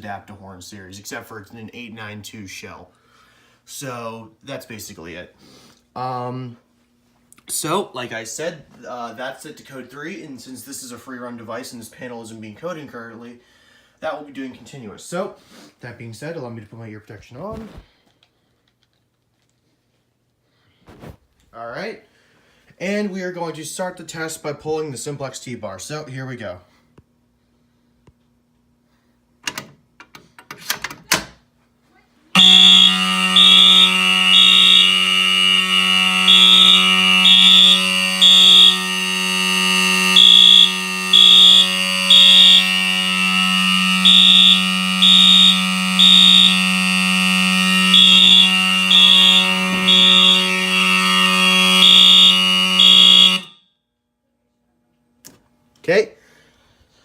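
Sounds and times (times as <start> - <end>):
fire alarm pull station clicks: 29.4 - 31.2
mechanical alarm horn buzzing: 32.3 - 53.9
alarm horn beeping pattern: 32.4 - 53.8.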